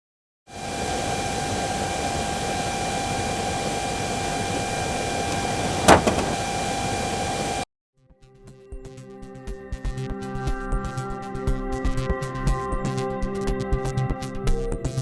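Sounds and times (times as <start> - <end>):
blower rushing air with whine: 0.5 - 7.6
car door knocking: 5.1 - 6.8.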